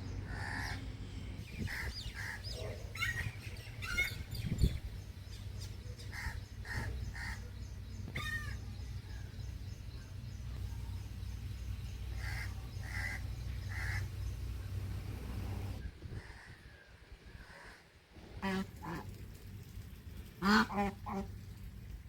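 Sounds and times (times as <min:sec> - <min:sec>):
crow cawing: 0:00.3 - 0:00.8, 0:12.2 - 0:14.1.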